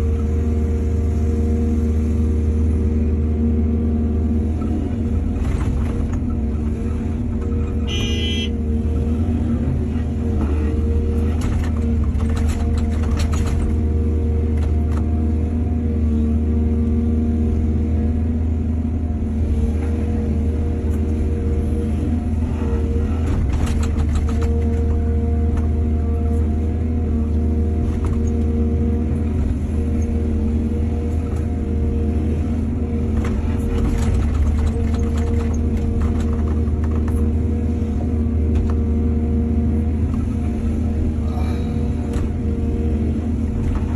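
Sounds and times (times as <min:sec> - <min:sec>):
diesel engine running: 0:00.0 - 0:43.9
clatters and scrapes: 0:10.4 - 0:13.8, 0:23.2 - 0:25.7, 0:33.1 - 0:37.4.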